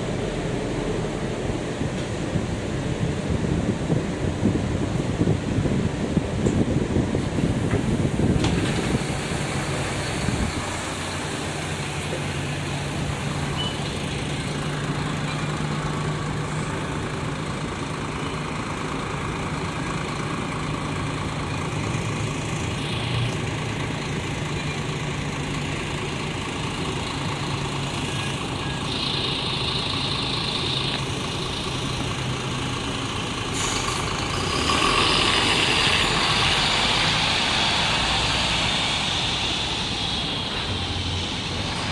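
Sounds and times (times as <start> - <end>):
bus engine idling: 0.0 - 41.9
compressed air hissing: 7.9 - 15.0, 27.1 - 41.9.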